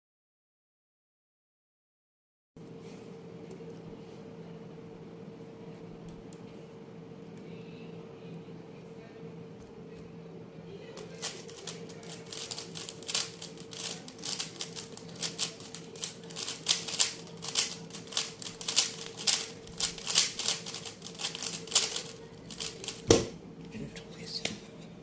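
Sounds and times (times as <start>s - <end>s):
puzzle cube clacking: 11.0s - 23.3s.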